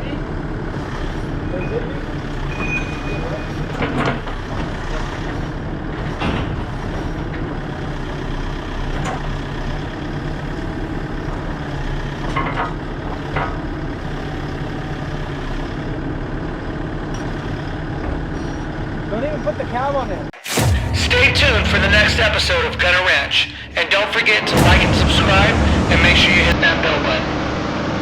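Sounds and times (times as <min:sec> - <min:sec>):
excavator diesel engine running: 0:20.6 - 0:27.0.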